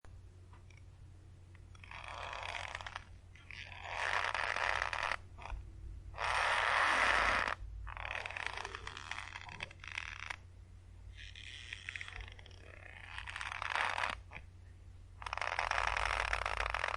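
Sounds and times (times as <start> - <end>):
rope creaking under tension: 1.7 - 5.6, 6.2 - 10.4, 11.1 - 14.4, 15.2 - 16.9.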